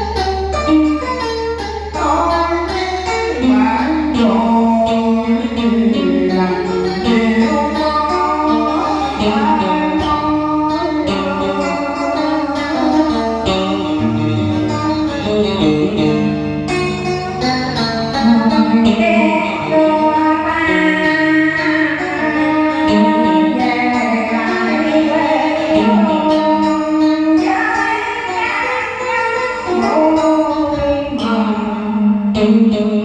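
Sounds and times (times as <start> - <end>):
instrumental backing music: 0.0 - 33.0
woman singing: 1.9 - 16.3, 17.3 - 33.0.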